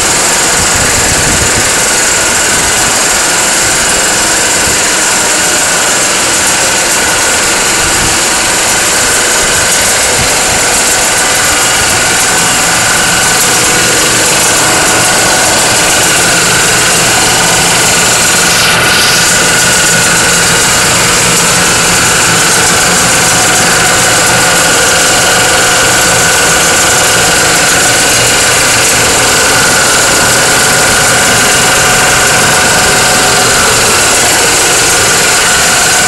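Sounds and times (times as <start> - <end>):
compressor and generator running: 0.0 - 36.0
high-pitched whine: 0.0 - 36.0.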